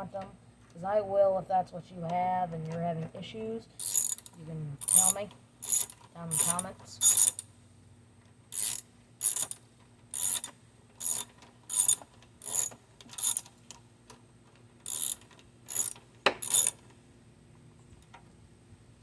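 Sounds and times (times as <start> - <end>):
ratcheting socket wrench: 3.8 - 7.5, 8.5 - 13.6, 14.8 - 16.8.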